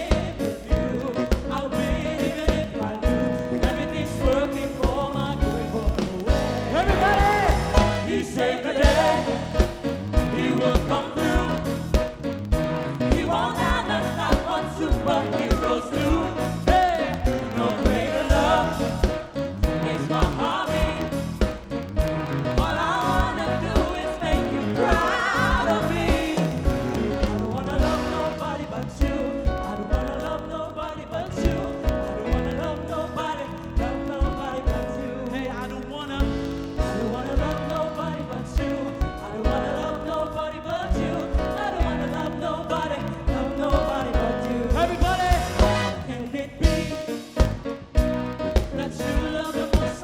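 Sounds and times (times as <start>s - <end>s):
drum hits: 0.0s - 30.2s, 43.8s - 50.0s
gospel band playing: 0.0s - 50.0s
voices singing wordless runs: 0.0s - 50.0s.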